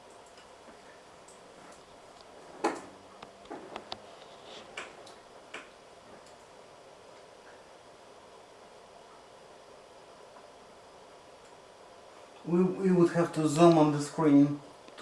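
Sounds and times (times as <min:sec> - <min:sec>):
faint steady hiss: 0:00.0 - 0:15.0.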